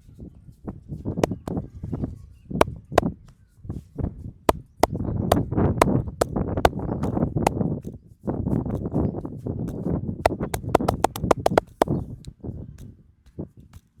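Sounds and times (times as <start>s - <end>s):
hands slapping on head: 1.2s - 1.6s, 10.3s - 11.9s.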